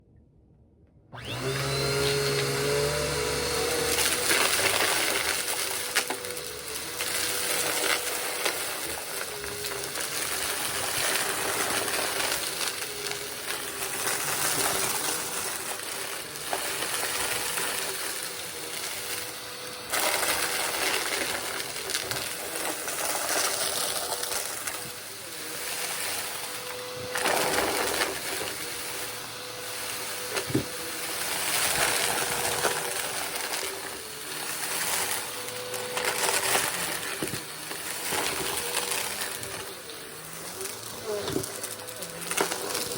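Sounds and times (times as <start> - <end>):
vacuum cleaner running: 1.1 - 42.9.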